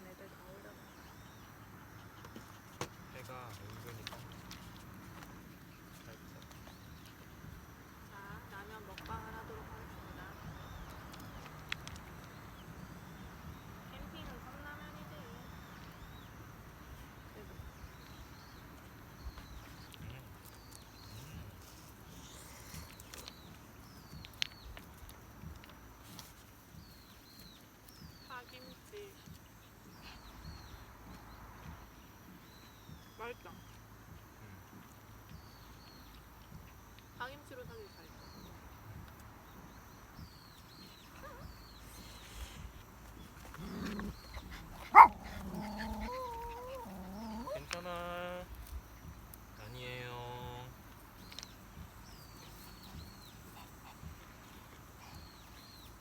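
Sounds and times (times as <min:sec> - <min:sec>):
dog whining: 0:43.6 - 0:47.7
dog barking: 0:44.8 - 0:47.6.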